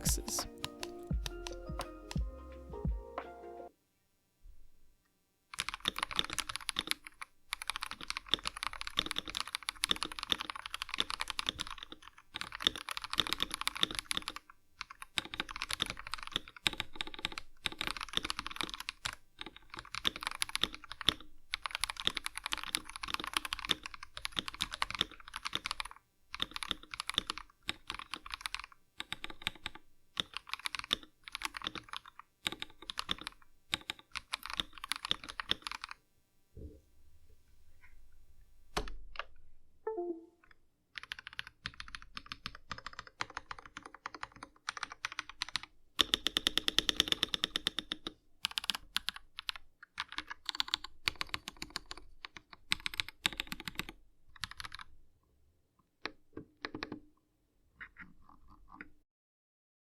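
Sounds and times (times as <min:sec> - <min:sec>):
mechanical keyboard typing: 0:00.2 - 0:02.2, 0:05.5 - 0:36.0, 0:41.0 - 0:54.9, 0:56.0 - 0:57.0.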